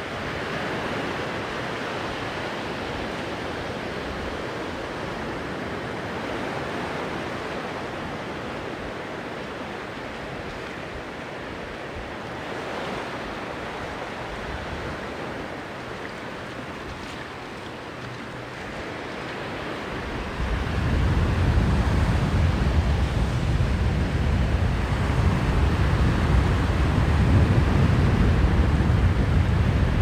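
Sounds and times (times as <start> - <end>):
surf washing onto beach: 0.0 - 30.0.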